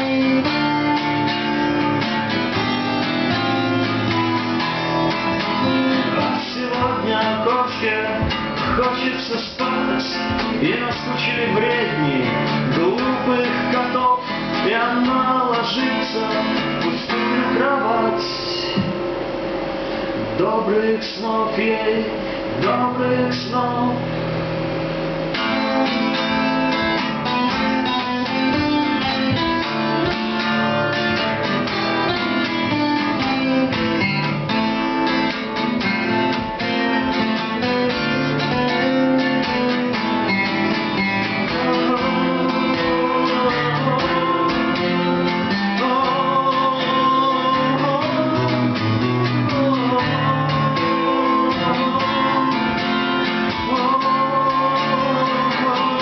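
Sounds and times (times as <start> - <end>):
picked acoustic guitar lead: 0.0 - 56.0
rhythm acoustic guitar: 0.0 - 56.0.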